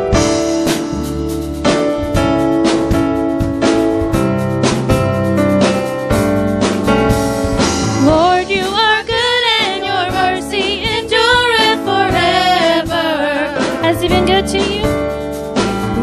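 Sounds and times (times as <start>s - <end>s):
band playing chords: 0.0s - 16.0s
person singing with vibrato: 8.1s - 15.0s.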